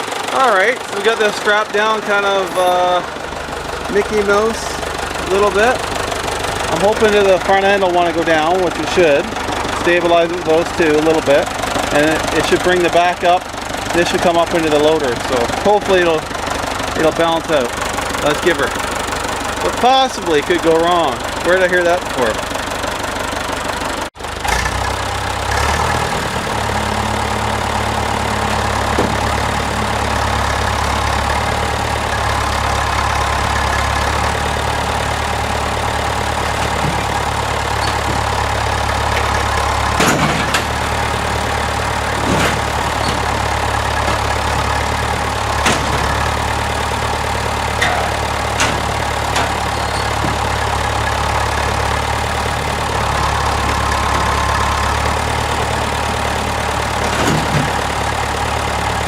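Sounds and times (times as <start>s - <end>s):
tractor engine running: 0.0s - 59.0s
sharp knocks: 39.2s - 41.3s, 45.6s - 46.5s.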